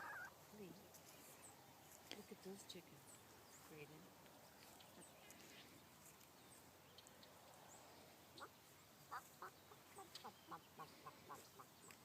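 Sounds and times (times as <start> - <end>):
fowl calling faintly: 0.0 - 0.3, 8.4 - 11.7.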